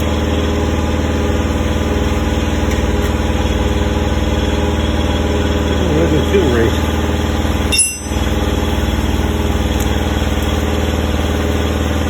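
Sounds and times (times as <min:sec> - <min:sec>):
mechanical hum with rapid pulse: 0:00.0 - 0:12.0.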